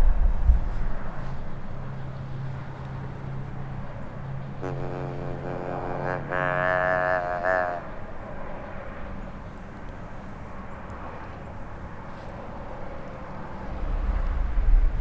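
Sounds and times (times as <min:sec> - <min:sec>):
deep rumble: 0:00.0 - 0:01.7, 0:13.3 - 0:15.0
distant low rumble: 0:00.0 - 0:15.0.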